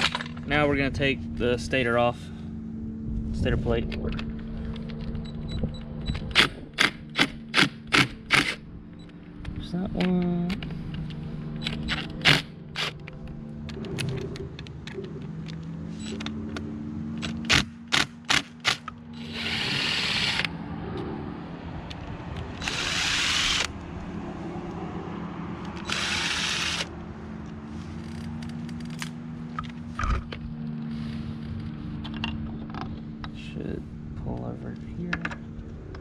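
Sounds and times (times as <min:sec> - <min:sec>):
sharp metallic clicks: 0:10.0 - 0:19.6
power drill-driver running: 0:17.2 - 0:20.5, 0:22.5 - 0:23.7, 0:25.7 - 0:26.9.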